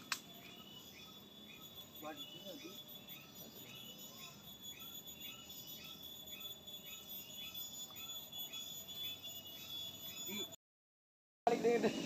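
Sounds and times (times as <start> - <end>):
high-pitched insect whine: 0.0 - 10.6
repeated chirping calls: 0.0 - 10.6.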